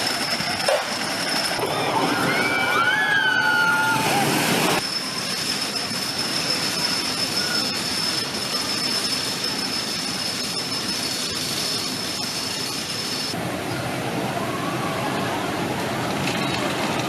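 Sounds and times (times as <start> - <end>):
roller coaster rolling on track: 0.0 - 17.0
thin high tone: 4.7 - 13.8.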